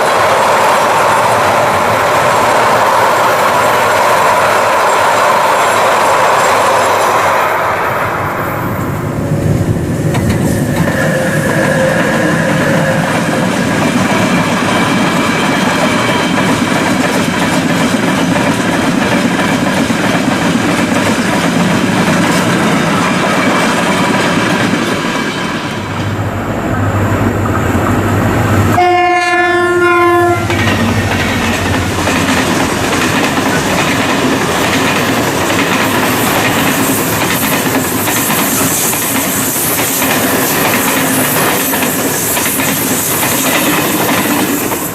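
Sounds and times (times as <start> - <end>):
freight train wheels clattering: 0.0 - 8.0, 8.7 - 44.9
train horn blast: 28.5 - 30.6.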